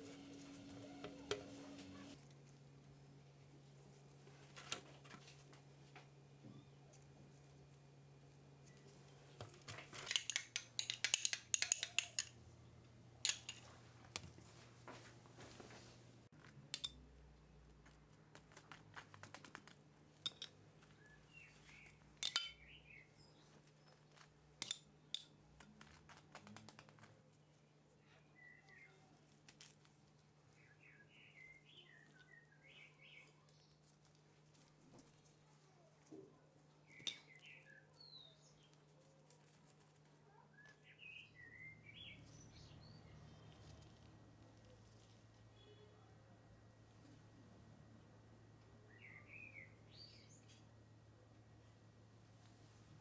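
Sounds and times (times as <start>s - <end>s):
utensils and dishes clinking: 9.8s - 12.4s, 13.2s - 13.8s, 22.2s - 22.6s.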